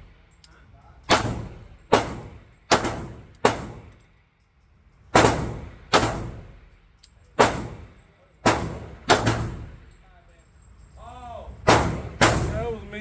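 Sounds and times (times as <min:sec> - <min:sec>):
pistol shots with reverb: 0:01.1 - 0:03.9, 0:05.2 - 0:06.6, 0:07.4 - 0:07.9, 0:08.5 - 0:09.8, 0:11.7 - 0:12.6.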